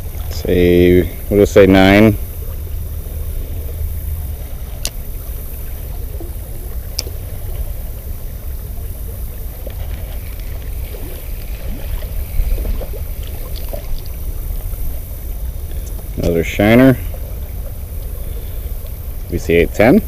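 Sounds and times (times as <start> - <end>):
flowing river water: 0.0 - 20.0
wind on microphone: 0.0 - 20.0
faint clicks: 4.8 - 5.0, 6.9 - 7.2.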